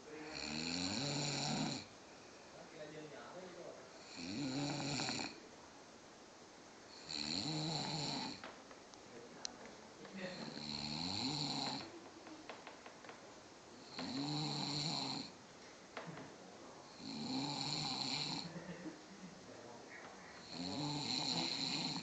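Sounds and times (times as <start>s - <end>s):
quiet breathing: 0.0s - 5.4s, 6.9s - 22.0s
man snoring: 0.2s - 1.9s, 4.0s - 5.4s, 6.9s - 8.4s, 10.3s - 11.9s, 13.8s - 15.4s, 16.8s - 18.6s, 20.4s - 22.0s.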